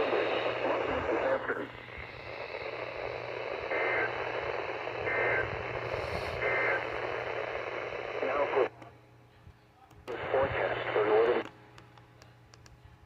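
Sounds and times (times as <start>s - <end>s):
radio static hiss: 0.0s - 8.9s, 10.0s - 11.5s.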